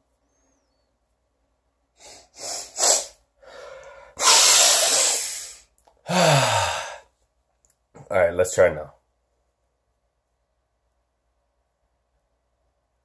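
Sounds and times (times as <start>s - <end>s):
sniffs: 2.0s - 5.7s
man breathing hard through nose: 2.0s - 7.2s
man sighing: 6.0s - 7.1s.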